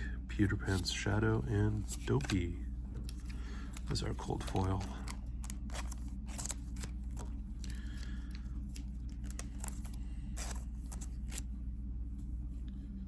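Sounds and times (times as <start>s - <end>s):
trading cards flipping: 1.8s - 2.4s, 3.0s - 11.5s.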